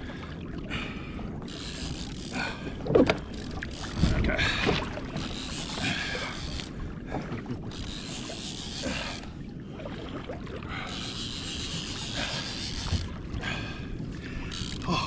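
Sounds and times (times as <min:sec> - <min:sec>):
water sloshing around a kayak: 0:00.0 - 0:15.0
wind buffeting microphone: 0:02.7 - 0:05.0.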